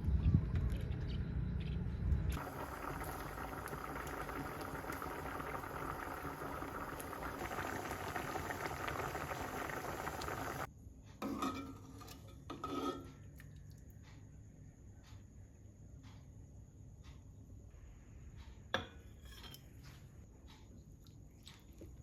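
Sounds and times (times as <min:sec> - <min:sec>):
food crackling and hissing: 0:02.3 - 0:10.7.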